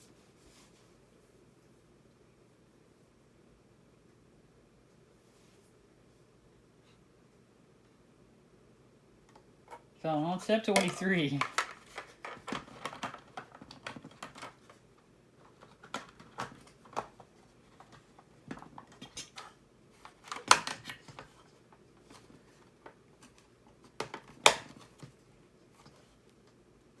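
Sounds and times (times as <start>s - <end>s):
parts clicking and knocking: 10.7s - 14.8s.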